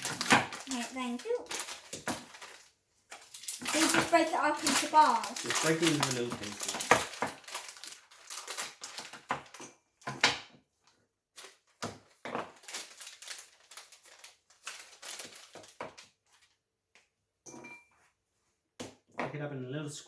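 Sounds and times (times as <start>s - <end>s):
chocolate bars snapping: 0.0s - 2.6s, 3.2s - 10.5s.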